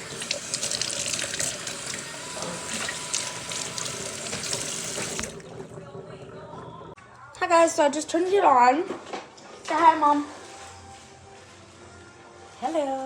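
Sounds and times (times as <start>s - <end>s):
hands washing under water: 0.0s - 5.4s
tap running into sink: 0.1s - 5.4s.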